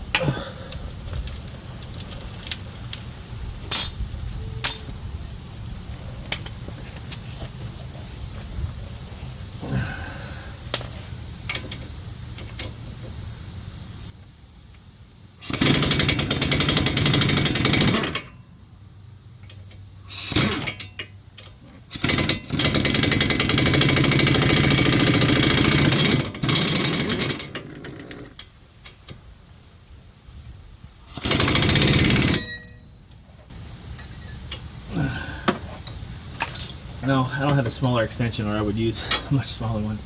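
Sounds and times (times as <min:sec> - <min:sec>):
pneumatic impact wrench hammering: 0:03.7 - 0:04.0, 0:04.6 - 0:04.9, 0:15.4 - 0:18.4, 0:19.4 - 0:28.2, 0:31.1 - 0:33.1.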